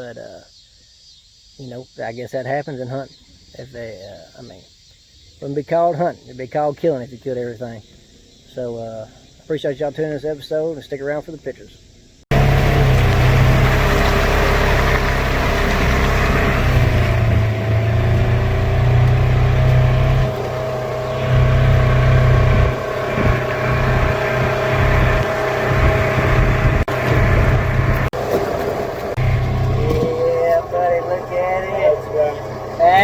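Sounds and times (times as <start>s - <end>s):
vehicle engine rumble with whine: 12.3s - 33.0s.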